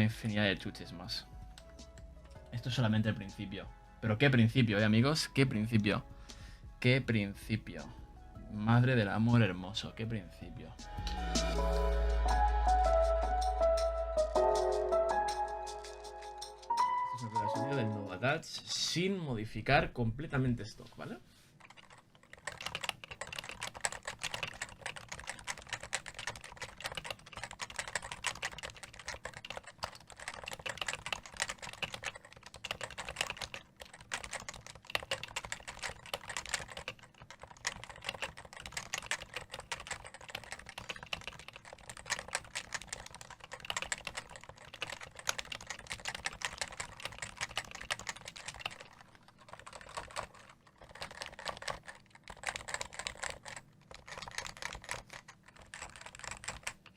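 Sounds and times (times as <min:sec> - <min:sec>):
fast typing on keyboard: 0:21.6 - 0:56.9.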